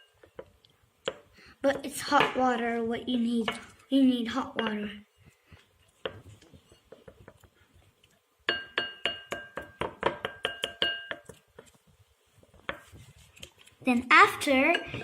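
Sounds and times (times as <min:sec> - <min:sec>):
utensil clinking against a bowl: 0:08.5 - 0:11.5, 0:14.6 - 0:15.0.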